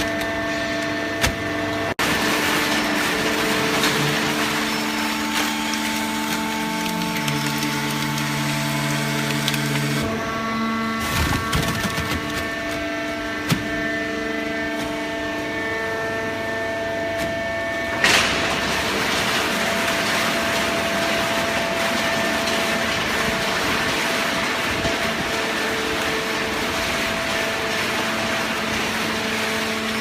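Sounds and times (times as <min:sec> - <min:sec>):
baling press machine hum: 0:00.0 - 0:30.0.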